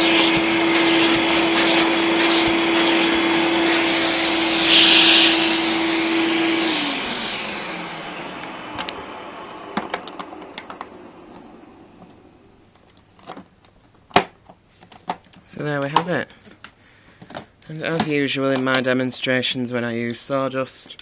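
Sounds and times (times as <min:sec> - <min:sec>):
rush of air: 0:04.5 - 0:06.0
vacuum cleaner motor humming: 0:04.6 - 0:05.7.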